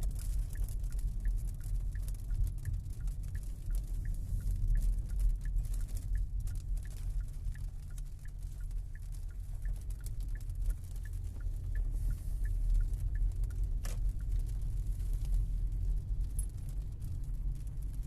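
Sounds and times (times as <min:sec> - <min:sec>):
car engine and road noise: 0:00.0 - 0:18.0
turn signal ticking: 0:00.0 - 0:18.0.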